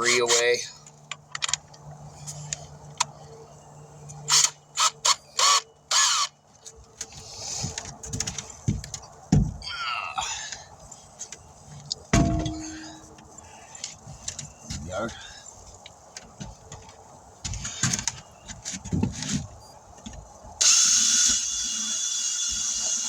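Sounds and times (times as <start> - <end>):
low steady hum: 5.8 - 18.1
low knocks of tire handling: 7.6 - 9.6, 12.1 - 13.3
power tool buffing tire: 20.6 - 23.0.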